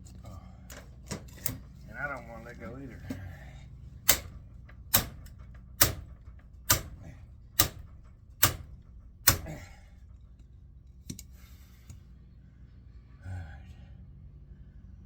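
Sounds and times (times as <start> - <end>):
hammer striking metal: 4.1 - 9.7.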